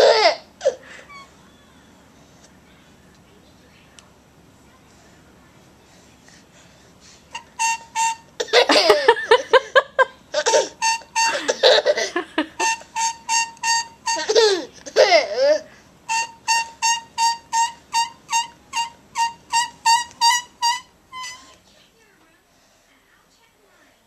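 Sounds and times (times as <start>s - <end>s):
child laughing: 0.0s - 1.8s, 8.4s - 15.7s
drinking straw squeaking: 7.3s - 8.6s, 10.4s - 11.9s, 12.6s - 14.6s, 16.1s - 21.6s.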